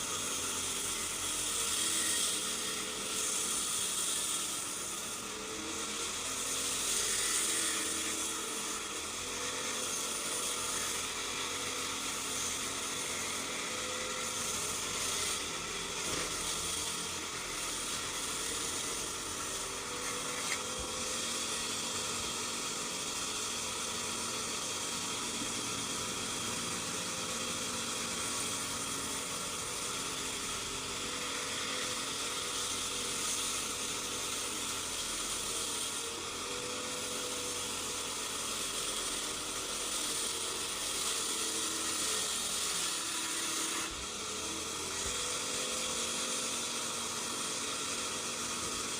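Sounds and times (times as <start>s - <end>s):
power saw cutting timber: 0.0s - 48.9s.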